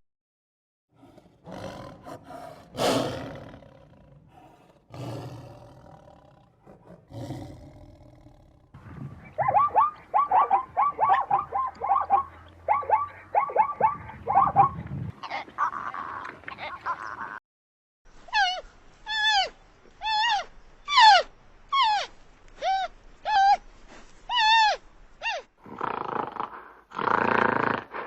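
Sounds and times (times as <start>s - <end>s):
big cat roaring: 1.0s - 8.7s
animal yelping: 9.3s - 15.5s, 18.3s - 23.6s, 24.3s - 25.5s.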